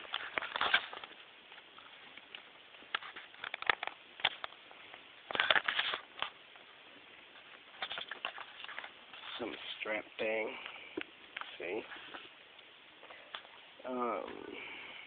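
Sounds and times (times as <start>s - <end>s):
packaging rustling: 0.0s - 6.7s, 7.3s - 9.8s.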